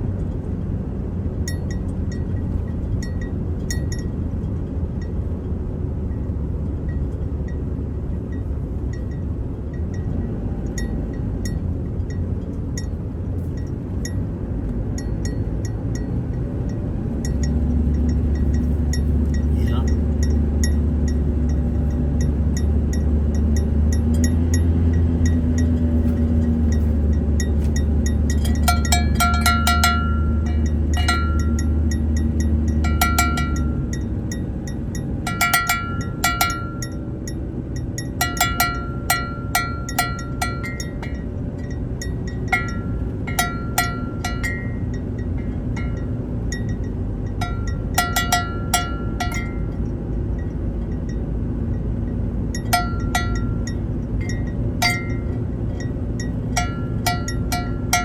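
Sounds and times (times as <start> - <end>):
engine and road rumble: 0.0 - 58.0
small bell jingling: 17.3 - 49.8.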